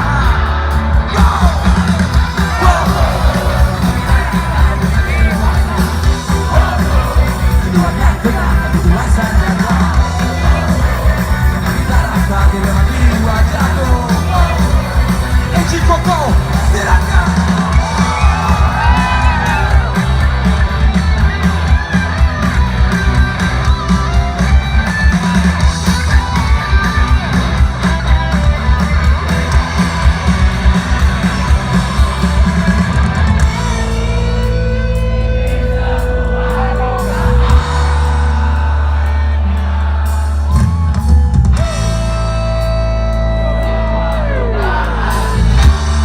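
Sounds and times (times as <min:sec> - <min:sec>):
lead electric guitar: 0:00.0 - 0:46.0
live rock band playing: 0:00.0 - 0:46.0.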